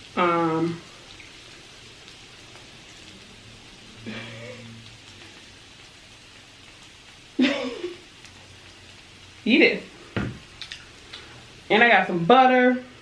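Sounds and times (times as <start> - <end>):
faint background hiss: 0.0 - 13.0.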